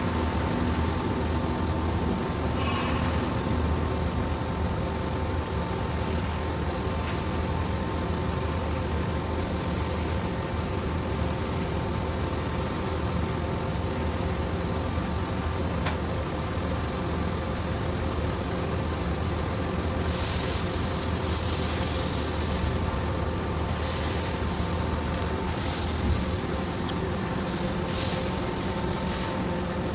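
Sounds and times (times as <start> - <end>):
machine humming and whining: 0.0 - 29.9
soft hissing: 19.8 - 29.9.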